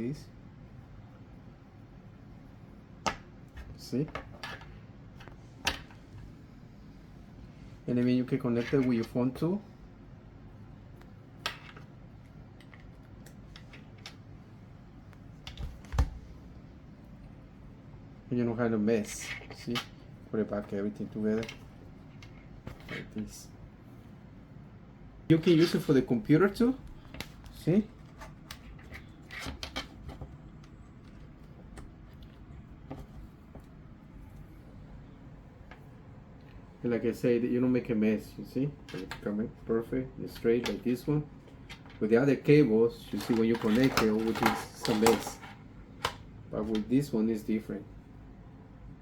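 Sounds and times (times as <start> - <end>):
cables clicking and rustling: 10.9 - 14.4, 19.1 - 23.2, 25.3 - 34.8, 42.9 - 47.1.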